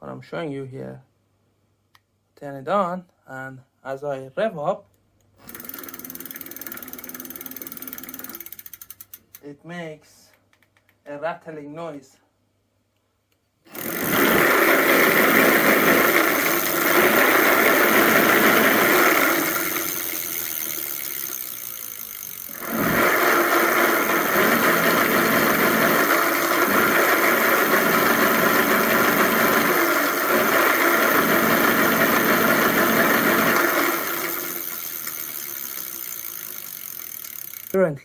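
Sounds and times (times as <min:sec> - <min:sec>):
electric hub motor whirring: 0:05.4 - 0:09.1, 0:13.7 - 0:37.8
rattle inside motor hub: 0:05.5 - 0:09.4, 0:13.7 - 0:37.8.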